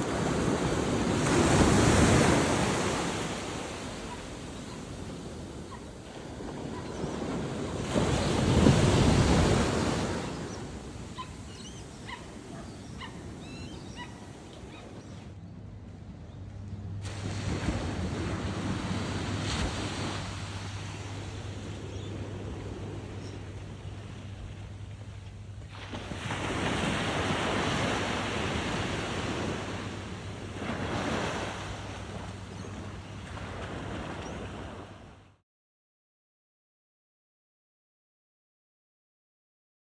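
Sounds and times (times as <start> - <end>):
wave breaking on beach: 0.0 - 11.1, 17.0 - 23.6, 25.7 - 34.9
wind on microphone: 0.0 - 15.3
surf washing: 0.0 - 15.4, 16.6 - 35.2.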